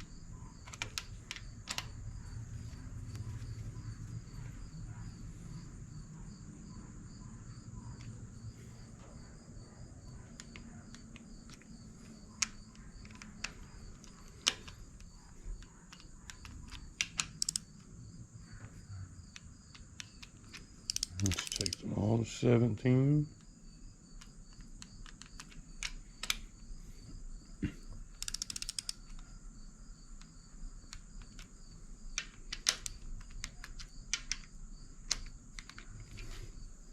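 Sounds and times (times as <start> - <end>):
ratchet wrench clicks: 15.9 - 17.7, 20.8 - 21.8, 28.2 - 29.0.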